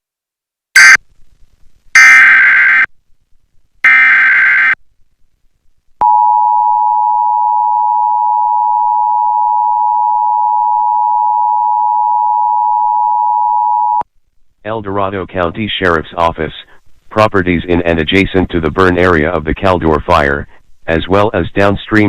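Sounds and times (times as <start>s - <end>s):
screechy digital data bursts: 2.0s - 2.9s, 3.8s - 4.8s
two-tone attention signal: 3.9s - 4.8s.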